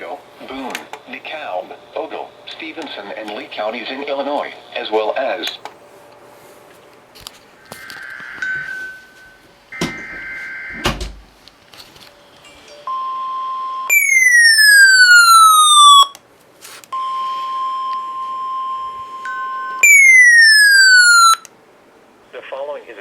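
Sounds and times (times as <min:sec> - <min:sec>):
steady alarm tone: 0:07.6 - 0:11.4, 0:12.7 - 0:16.2, 0:17.0 - 0:21.5
falling siren sweep: 0:07.7 - 0:11.2, 0:13.8 - 0:16.2, 0:18.0 - 0:21.5.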